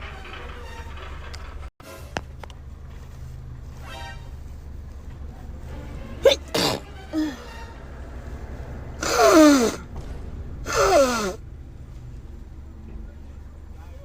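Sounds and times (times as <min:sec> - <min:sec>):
woman sneezing: 0:06.2 - 0:07.4, 0:09.0 - 0:09.8, 0:10.7 - 0:11.4.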